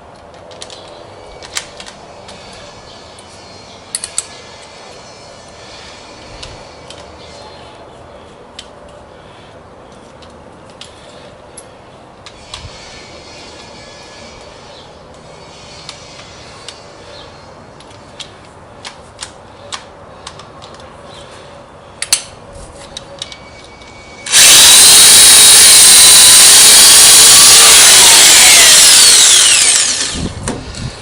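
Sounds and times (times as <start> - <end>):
electric drill drilling metal: 24.3 - 30.9.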